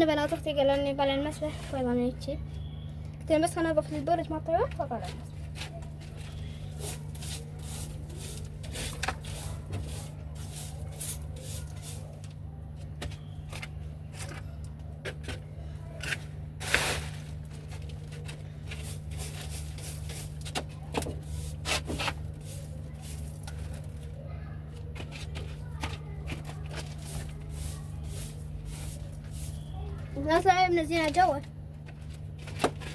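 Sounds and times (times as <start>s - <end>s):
steady low hum: 0.0s - 32.9s
broom sweeping: 5.0s - 12.3s, 16.6s - 20.6s, 21.2s - 24.1s, 26.3s - 30.4s.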